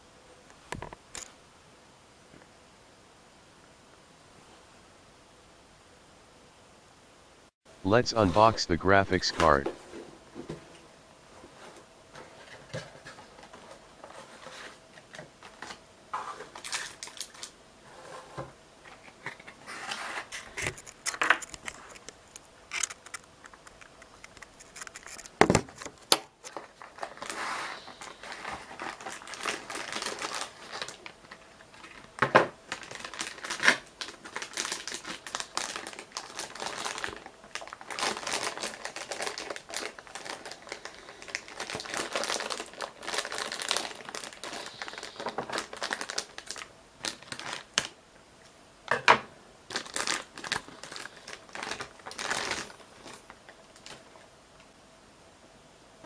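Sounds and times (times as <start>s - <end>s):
cardboard packaging crinkling: 11.4s - 48.0s, 49.7s - 54.2s.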